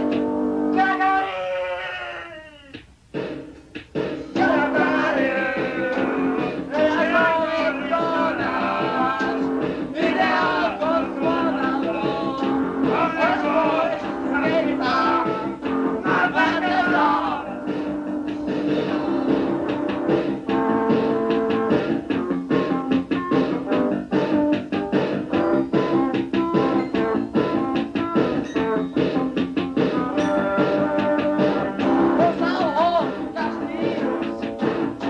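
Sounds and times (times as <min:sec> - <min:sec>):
punk rock band playing: 0:00.0 - 0:01.0, 0:02.8 - 0:35.0.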